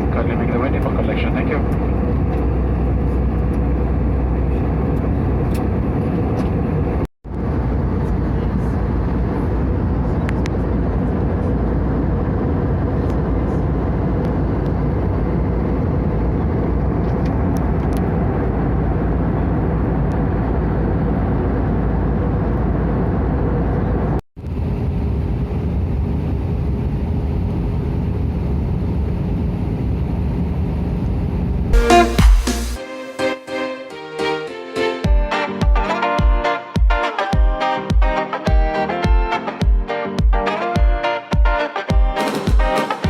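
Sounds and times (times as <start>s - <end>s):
airplane cabin engine and airflow noise: 0.0s - 32.9s.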